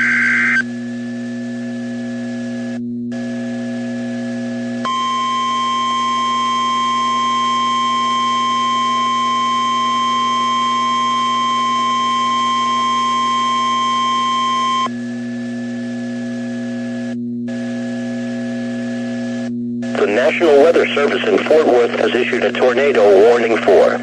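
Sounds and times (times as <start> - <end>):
receiver hum: 0.0 - 24.0
steady high alarm tone: 4.8 - 14.9.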